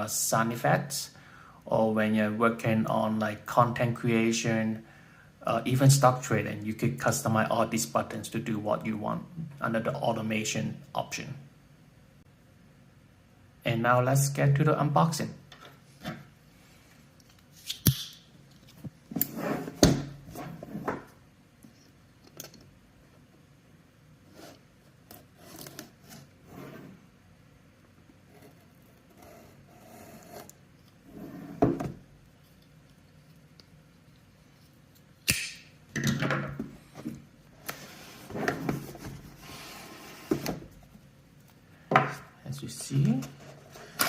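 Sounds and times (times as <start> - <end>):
sharp click: 35.2 - 35.7
cardboard rustling and scraping: 36.9 - 41.0.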